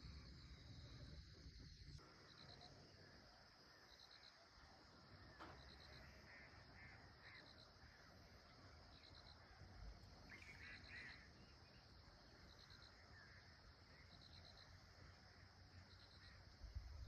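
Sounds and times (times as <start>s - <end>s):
high insect drone: 0.0s - 17.0s
insect chirping in pulsed trills: 0.0s - 17.0s
bird calls: 5.1s - 16.4s.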